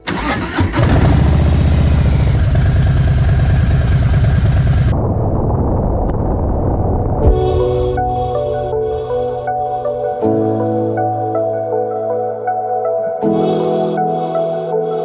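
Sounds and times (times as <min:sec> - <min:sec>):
motorcycle engine pulsing: 0:00.2 - 0:08.2.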